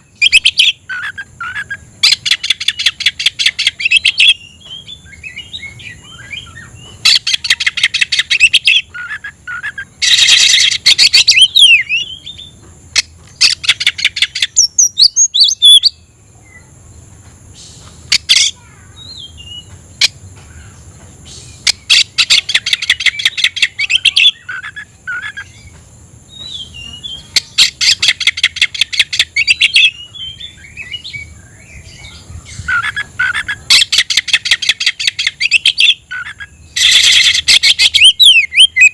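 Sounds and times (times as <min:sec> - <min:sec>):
songbird rattling song: 0:00.0 - 0:38.9
bird whistles: 0:00.2 - 0:12.5, 0:32.6 - 0:38.9.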